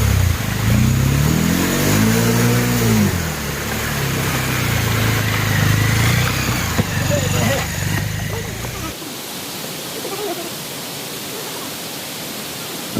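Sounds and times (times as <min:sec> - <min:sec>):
motorcycle engine revving: 0:00.0 - 0:09.0.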